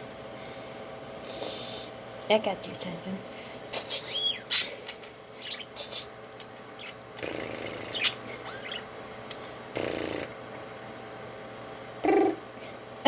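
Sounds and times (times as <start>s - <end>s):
budgies chirping: 3.8s - 10.3s.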